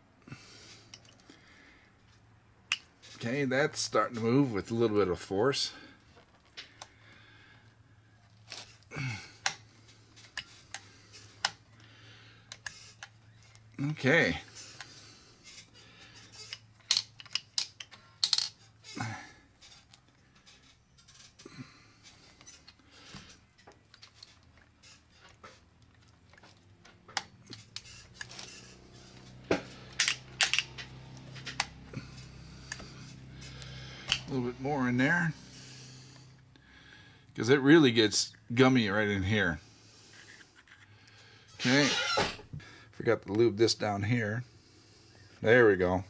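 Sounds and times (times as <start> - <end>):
metallic clicks and clinks: 15.4 - 18.8, 27.2 - 32.8
steady low hum: 25.2 - 37.4.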